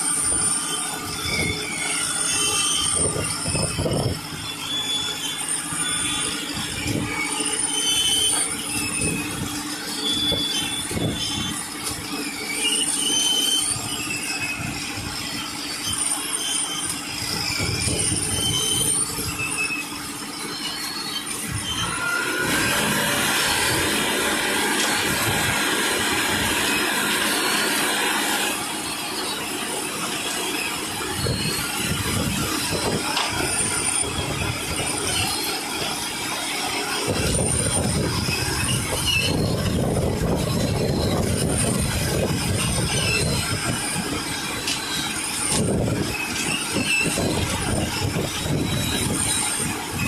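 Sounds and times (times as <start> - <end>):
concrete mixer machinery: 0.0 - 50.0
metallic squealing and clatter: 0.0 - 50.0.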